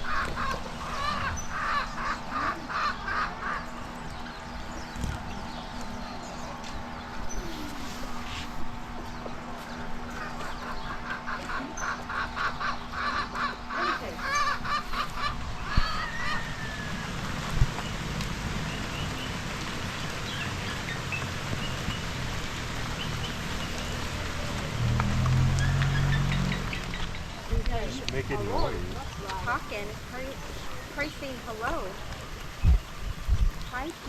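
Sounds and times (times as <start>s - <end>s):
bird calling loudly: 0.0s - 4.0s, 10.1s - 17.2s.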